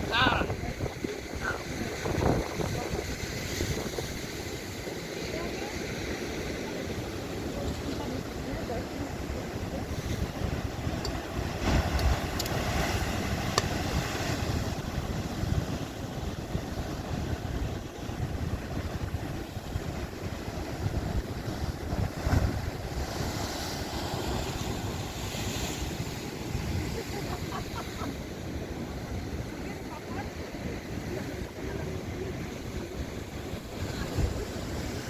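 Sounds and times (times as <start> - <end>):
wind buffeting microphone: 0.0 - 4.8, 9.6 - 28.1, 30.9 - 35.0
surf breaking on shore: 0.0 - 35.0.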